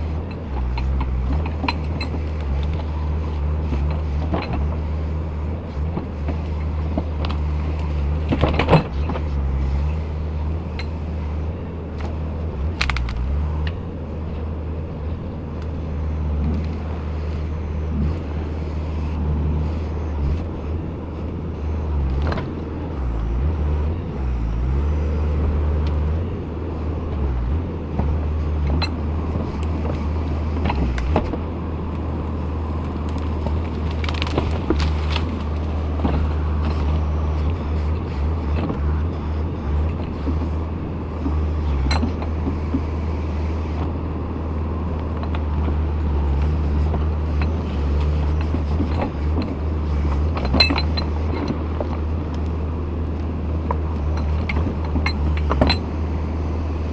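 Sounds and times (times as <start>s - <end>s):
diesel engine running: 0.0s - 56.9s.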